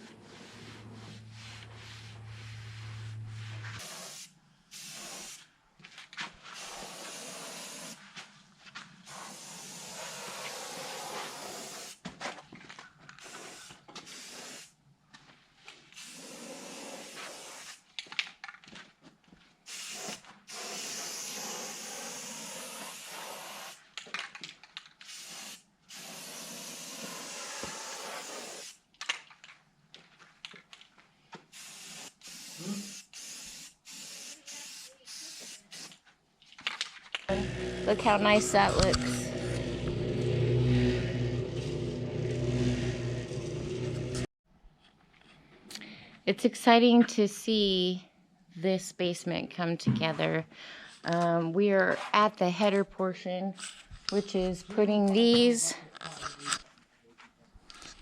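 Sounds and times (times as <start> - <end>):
low hum: 0.0 - 3.8, 37.3 - 44.3
spray paint hissing: 0.4 - 5.5, 6.5 - 8.0, 9.1 - 12.0, 13.2 - 14.7, 15.9 - 17.9, 19.7 - 23.8, 25.0 - 28.8, 31.5 - 36.0, 37.3 - 39.8.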